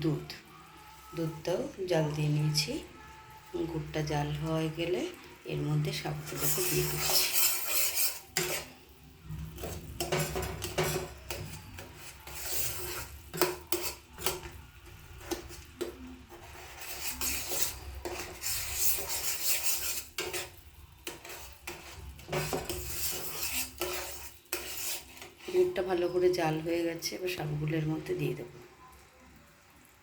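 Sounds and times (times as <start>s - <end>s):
spoon scraping bottom of pan: 5.9s - 25.8s.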